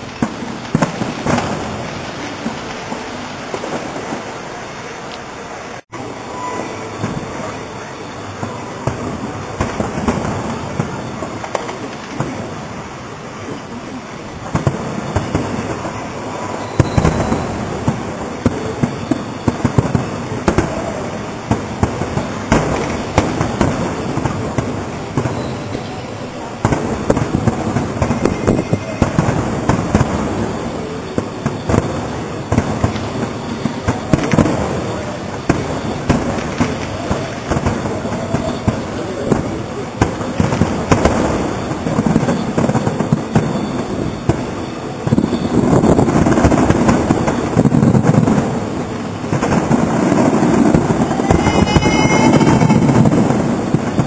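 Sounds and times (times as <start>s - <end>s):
fireworks bangs and crackles: 0.0s - 4.6s, 6.9s - 54.0s.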